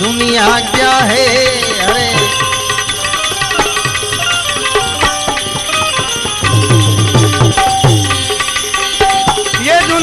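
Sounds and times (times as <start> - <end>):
hand drum beats: 0.0 - 10.0.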